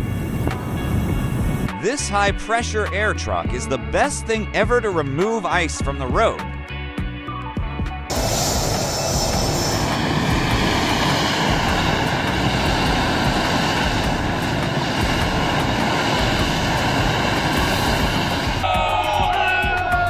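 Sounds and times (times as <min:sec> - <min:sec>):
air blower roaring: 0:00.0 - 0:01.8, 0:08.1 - 0:18.7.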